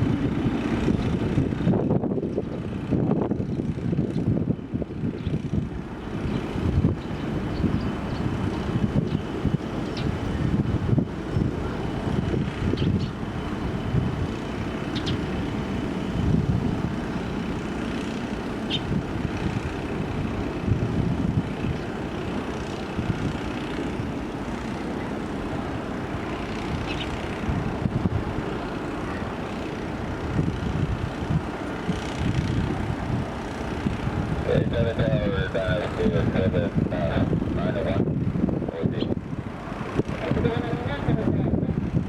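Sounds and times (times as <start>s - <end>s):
jet engines rumbling: 0.0s - 42.0s.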